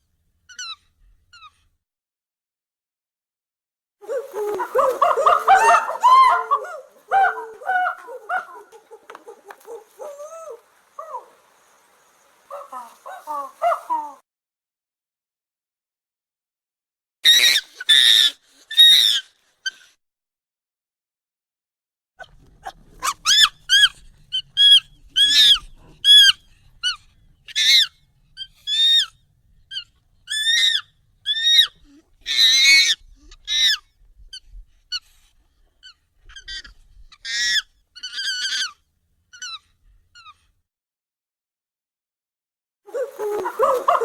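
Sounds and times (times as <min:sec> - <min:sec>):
high-pitched monkey calls: 0:00.5 - 0:01.6, 0:04.1 - 0:11.4, 0:12.5 - 0:14.2, 0:17.3 - 0:19.8, 0:22.2 - 0:35.0, 0:35.8 - 0:40.4
monkey screaming: 0:04.1 - 0:11.3, 0:12.5 - 0:14.2, 0:17.3 - 0:19.2, 0:22.2 - 0:29.1, 0:29.7 - 0:33.8, 0:36.3 - 0:39.6, 0:42.9 - 0:44.0.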